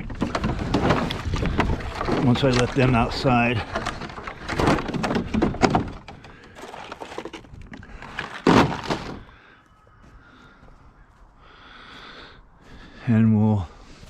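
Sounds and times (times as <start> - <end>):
dull thunks and knocks: 0.0 - 9.3.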